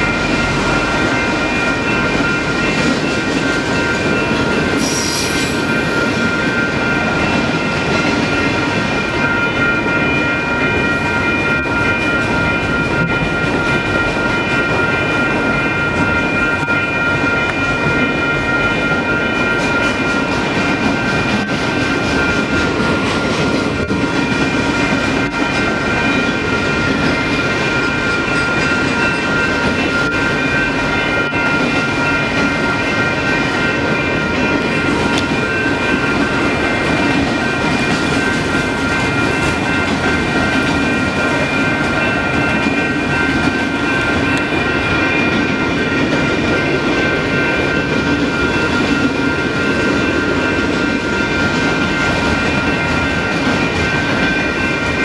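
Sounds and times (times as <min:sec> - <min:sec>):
high ringing tone: 0:00.0 - 0:20.3
steel wheels rumbling on rail: 0:00.0 - 0:55.0.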